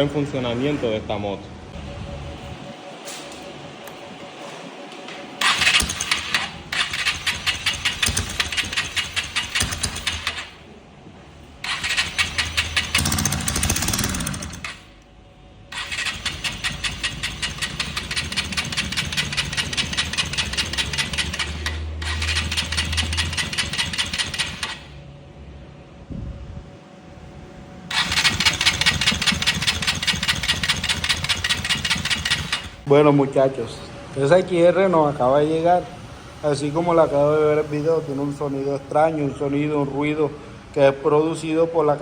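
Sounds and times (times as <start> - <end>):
motorcycle engine knocking: 5.5 - 10.6, 11.6 - 14.8, 15.8 - 24.9, 27.9 - 32.8.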